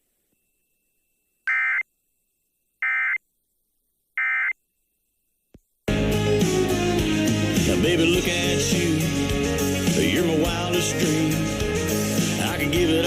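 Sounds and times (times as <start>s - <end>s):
country music: 5.9s - 13.0s.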